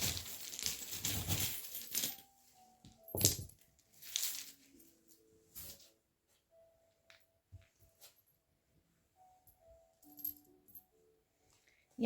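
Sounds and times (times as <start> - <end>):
metal charms clinking: 0.0 - 2.3
soft background music: 0.0 - 12.0.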